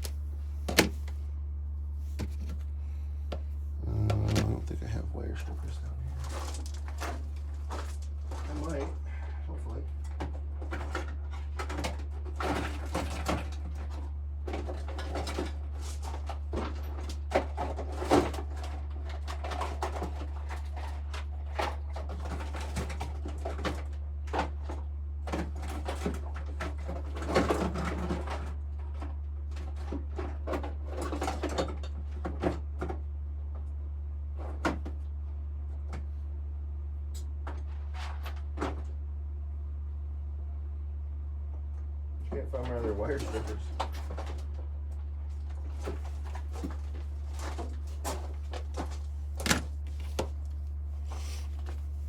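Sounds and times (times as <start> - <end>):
steady low hum: 0.0 - 19.7, 32.8 - 52.0
rummaging through tools: 1.9 - 9.1, 45.3 - 52.0.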